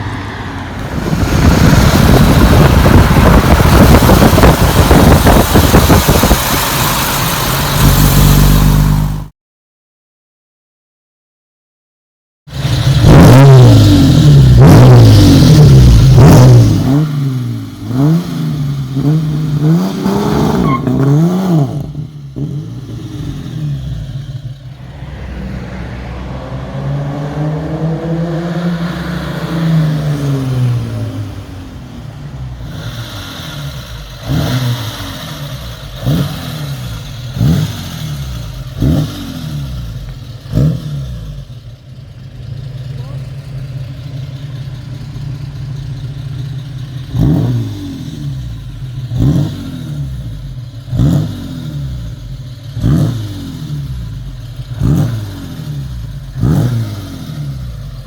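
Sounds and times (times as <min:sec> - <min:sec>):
car engine revving: 0:00.0 - 0:09.3, 0:12.5 - 0:58.0
engine idling: 0:41.2 - 0:47.4.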